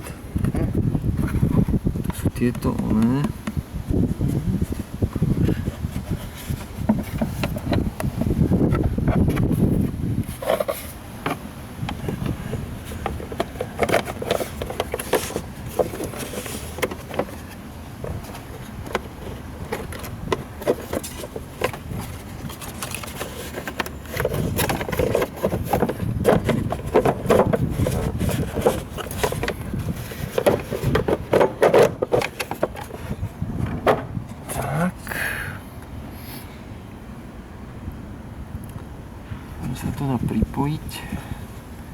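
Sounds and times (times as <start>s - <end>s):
plastic and metal scraping: 0.0s - 34.9s
clicks and knocks of parts: 10.4s - 34.1s.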